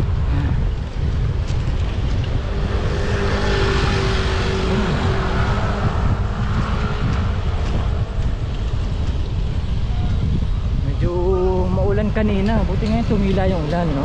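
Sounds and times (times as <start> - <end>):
wind buffeting microphone: 0.0 - 14.0
motor vehicle passing: 1.0 - 10.8.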